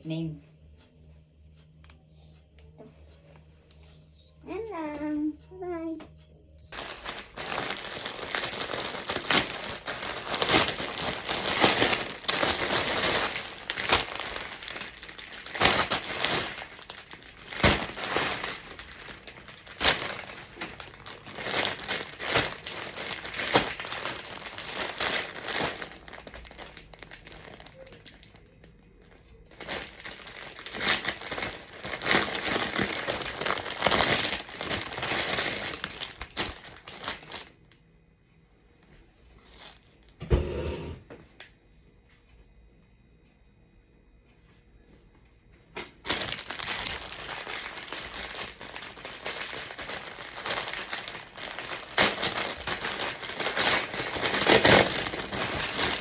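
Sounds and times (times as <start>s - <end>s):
packaging crinkling: 6.7s - 37.6s, 39.4s - 40.2s, 45.8s - 56.0s.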